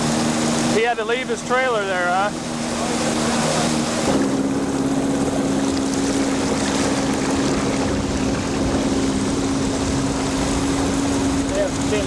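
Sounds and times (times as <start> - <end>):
motorboat engine droning: 0.0 - 12.0
water wash: 0.0 - 12.0
wind noise: 2.7 - 12.0.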